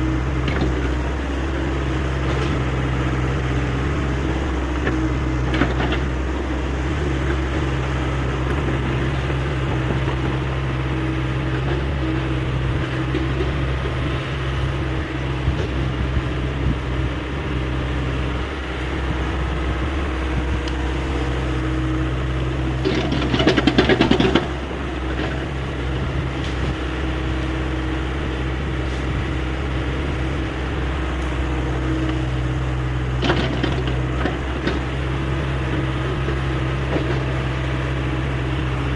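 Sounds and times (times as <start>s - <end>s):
excavator diesel engine running: 0.0s - 38.9s
loud rattling clatter: 22.8s - 25.4s.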